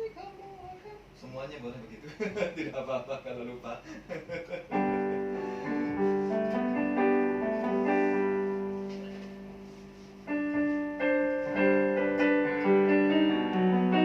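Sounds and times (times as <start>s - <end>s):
piano playing chords: 4.7s - 14.0s.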